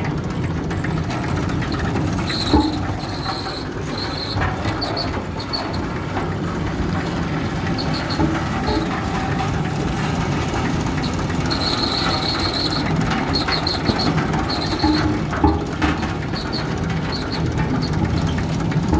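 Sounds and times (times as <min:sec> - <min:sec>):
road roller engine running: 0:00.0 - 0:18.9
short high squeaks: 0:01.7 - 0:06.0, 0:11.0 - 0:15.2.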